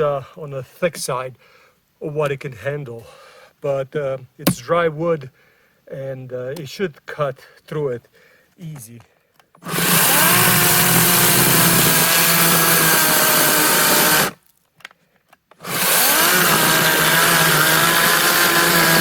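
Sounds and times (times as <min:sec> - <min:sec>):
electric chainsaw cutting wood: 0:09.6 - 0:14.4, 0:15.6 - 0:19.0.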